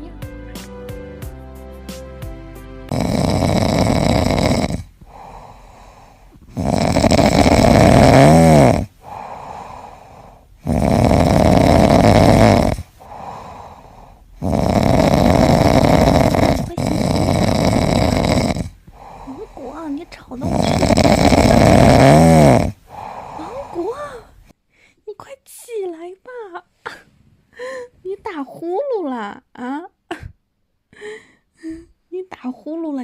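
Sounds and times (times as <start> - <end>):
dog snoring loudly: 2.9 - 23.9
dog breathing: 2.9 - 24.5.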